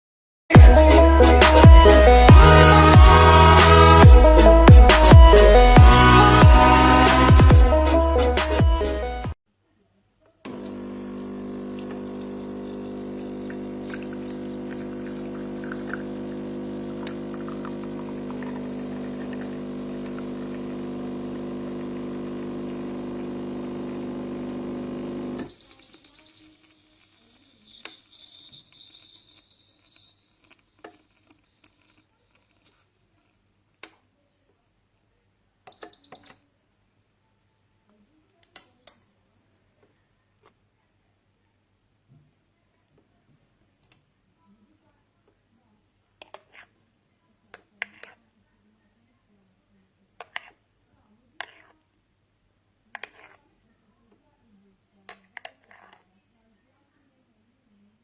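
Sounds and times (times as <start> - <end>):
espresso machine pump buzzing: 5.8 - 7.6, 10.5 - 25.6
short high beeps: 25.4 - 26.6.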